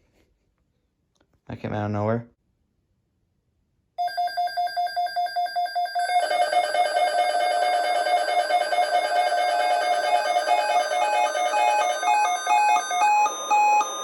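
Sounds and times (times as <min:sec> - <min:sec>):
pulsed electronic alarm beeps: 0:04.0 - 0:14.0
beeping tones at other pitches: 0:05.2 - 0:14.0.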